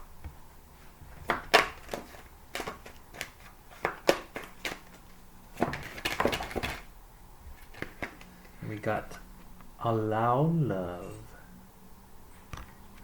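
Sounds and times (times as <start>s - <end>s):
cards being shuffled: 1.2s - 6.9s, 7.5s - 8.6s.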